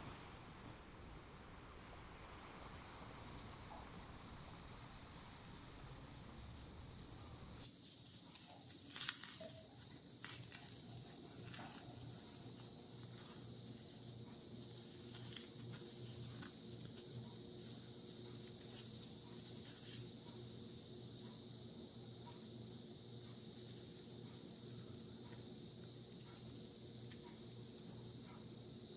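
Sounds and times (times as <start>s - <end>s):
crinkling and tearing handling: 6.1s - 20.4s
sharp crackles: 8.3s - 14.0s.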